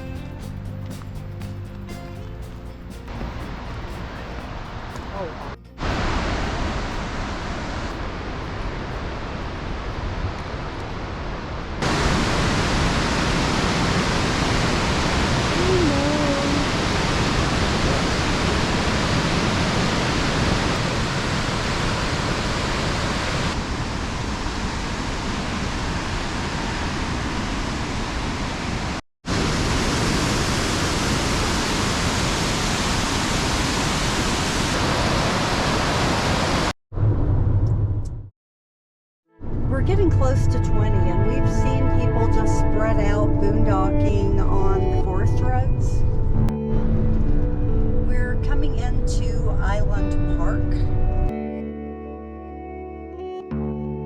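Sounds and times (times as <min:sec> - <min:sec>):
waterfall rushing: 0:03.1 - 0:36.7.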